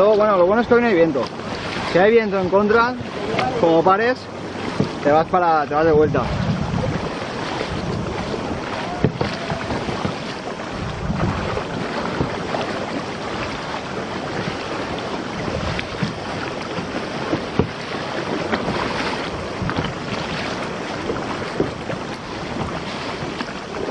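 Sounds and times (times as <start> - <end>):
paddle splashes and knocks: 0.0 - 23.9
water sloshing around hull: 0.0 - 23.9.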